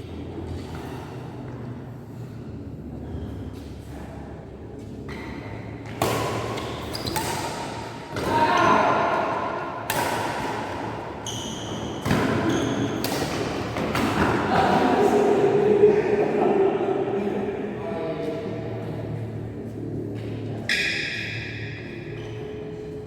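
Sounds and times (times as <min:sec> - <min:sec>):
racket hitting shuttlecock: 0:05.8 - 0:11.0, 0:11.8 - 0:14.4.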